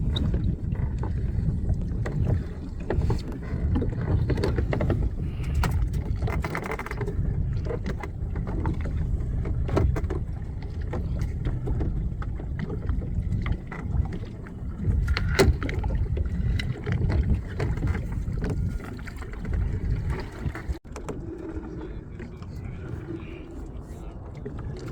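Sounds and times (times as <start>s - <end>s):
low rumble of wind and boat: 0.0s - 24.9s
fish traps knocking and clicking: 3.8s - 8.8s, 14.9s - 18.6s.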